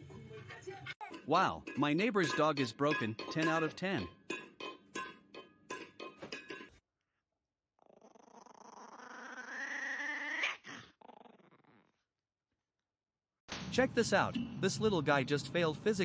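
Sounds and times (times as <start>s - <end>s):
dog growling whine: 7.8s - 12.1s.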